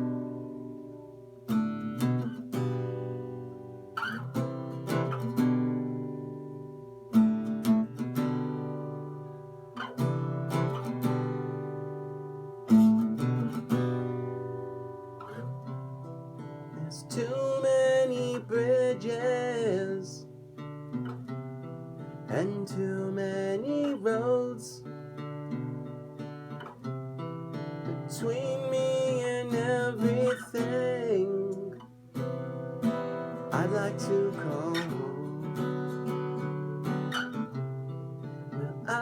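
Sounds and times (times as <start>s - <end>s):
acoustic guitar chords: 0.0s - 39.0s
person singing: 16.7s - 20.3s, 22.3s - 24.9s, 27.9s - 31.9s, 33.4s - 36.4s, 38.5s - 39.0s.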